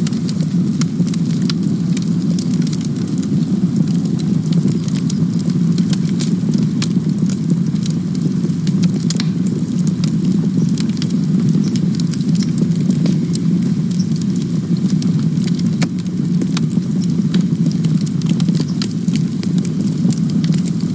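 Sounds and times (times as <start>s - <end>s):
campfire rumble: 0.0s - 20.9s
wood crackling and popping: 0.0s - 20.9s.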